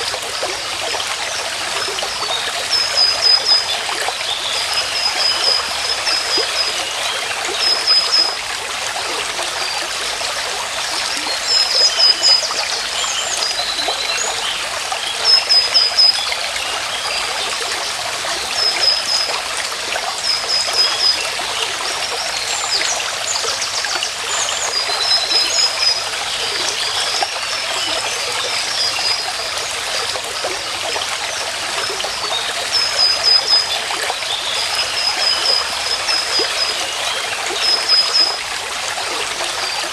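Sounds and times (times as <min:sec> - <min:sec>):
stream running: 0:00.0 - 0:39.9.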